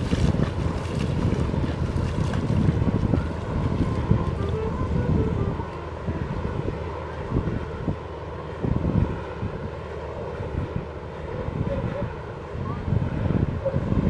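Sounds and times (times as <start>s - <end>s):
ocean surf: 0.0s - 13.8s
wind buffeting microphone: 0.0s - 14.0s.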